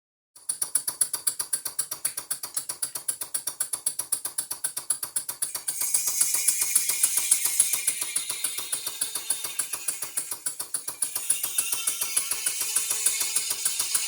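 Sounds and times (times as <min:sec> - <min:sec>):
steam engine running fast: 0:05.5 - 0:14.0.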